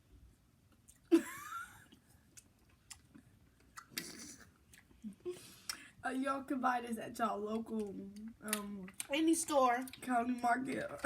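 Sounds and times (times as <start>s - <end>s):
chewing fruit and ice: 0.7s - 1.1s, 1.9s - 5.8s, 7.5s - 11.0s.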